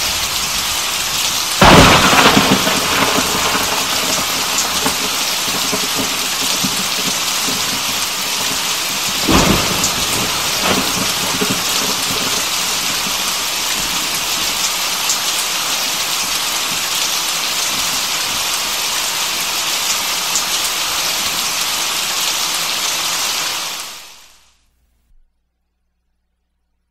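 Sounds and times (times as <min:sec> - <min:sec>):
low rumble of thunder: 0:00.0 - 0:18.8
heavy rain falling: 0:00.0 - 0:24.5.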